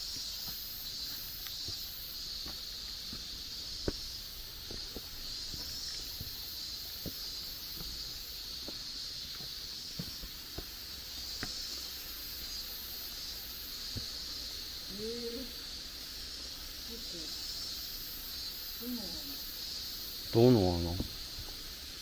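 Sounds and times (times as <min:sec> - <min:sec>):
footsteps on wet trail: 0:00.0 - 0:12.0
high-pitched pulsing hiss: 0:00.0 - 0:22.0.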